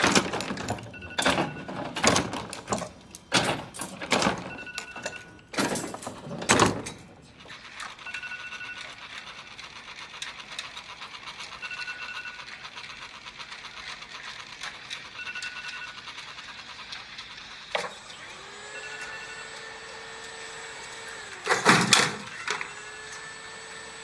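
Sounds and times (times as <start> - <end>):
phone alarm ringing: 0.9 - 2.0, 4.2 - 5.6, 7.7 - 9.4, 11.3 - 12.8, 14.9 - 16.4, 18.1 - 20.6, 22.3 - 23.8.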